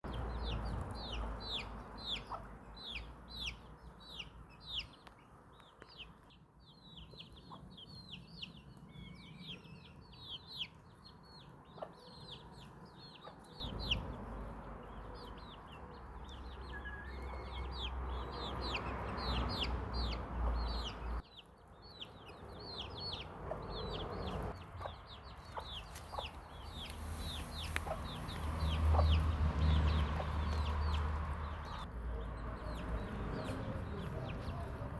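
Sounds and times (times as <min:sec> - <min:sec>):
small birds chirping: 0:00.0 - 0:34.9
hens clucking: 0:23.2 - 0:31.8.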